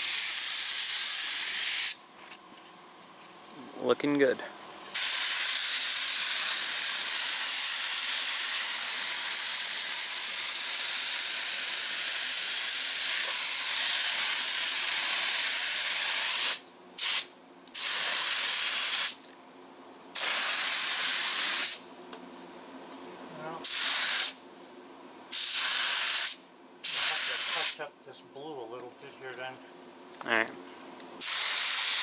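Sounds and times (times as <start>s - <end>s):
spray gun hissing: 0.0s - 2.0s, 5.0s - 17.2s, 17.8s - 19.2s, 20.2s - 21.8s, 23.6s - 24.4s, 25.3s - 27.8s, 31.2s - 32.0s.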